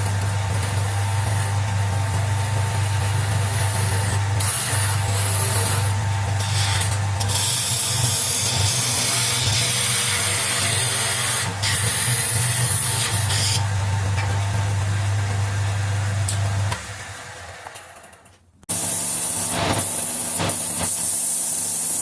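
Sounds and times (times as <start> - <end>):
wood lathe motor hum: 0.0 - 18.1
chisel cutting spinning wood: 0.0 - 22.0.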